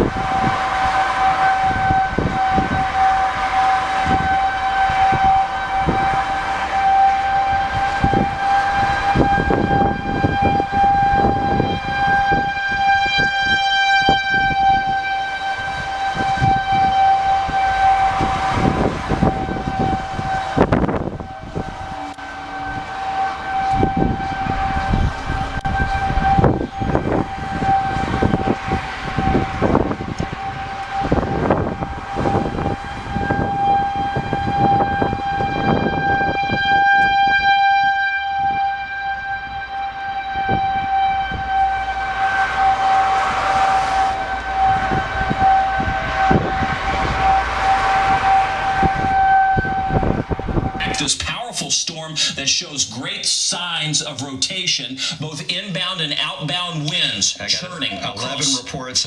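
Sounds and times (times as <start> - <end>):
warning siren steady tone: 0.0 - 59.0
higher tones: 0.1 - 35.1, 38.6 - 59.0
irregular rumbling: 15.3 - 35.3, 40.4 - 51.6.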